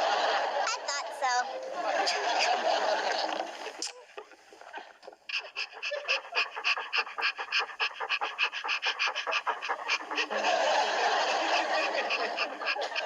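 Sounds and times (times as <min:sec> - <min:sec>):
dog panting: 0:04.2 - 0:13.0.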